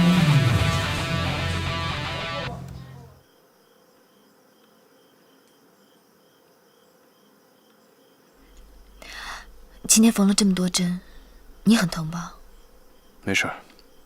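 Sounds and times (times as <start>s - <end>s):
rock music with guitar: 0.0s - 2.9s
crickets chirping: 0.0s - 14.0s.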